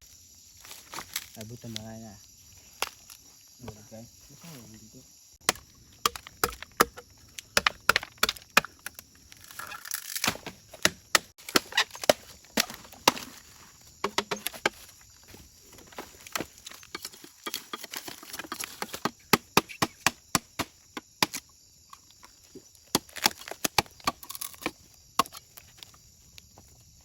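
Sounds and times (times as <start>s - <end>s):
bamboo chopping strikes: 5.4s - 13.4s, 14.0s - 14.9s, 16.3s - 21.5s, 22.9s - 25.4s.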